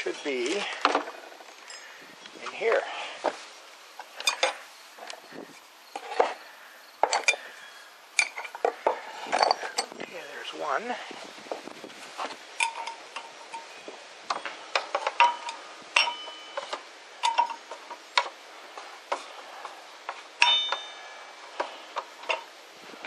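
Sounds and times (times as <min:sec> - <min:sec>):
metal tools clinking: 0:00.1 - 0:02.0, 0:04.0 - 0:05.2, 0:07.0 - 0:07.6, 0:08.2 - 0:10.0, 0:12.6 - 0:18.3, 0:20.4 - 0:22.5.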